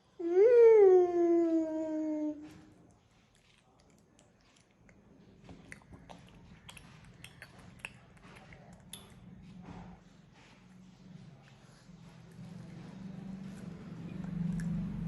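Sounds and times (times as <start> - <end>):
person chewing wetly: 2.9 - 9.4, 14.1 - 15.0.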